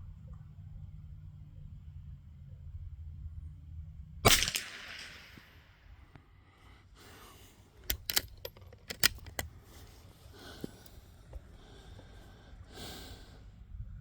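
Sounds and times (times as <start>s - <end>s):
rifle bolt clicking metallically: 4.3s - 5.5s, 7.8s - 9.6s
handling rustles: 7.8s - 11.5s.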